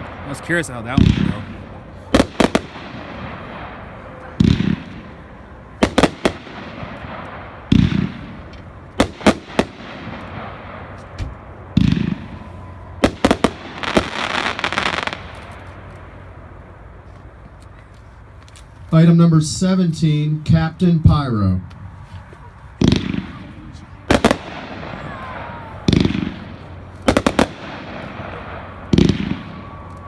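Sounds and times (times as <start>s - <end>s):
firework crackle: 0.0s - 5.2s, 5.8s - 17.4s, 22.8s - 30.0s
firework shells bursting: 0.0s - 5.2s, 5.8s - 16.1s, 24.1s - 30.0s.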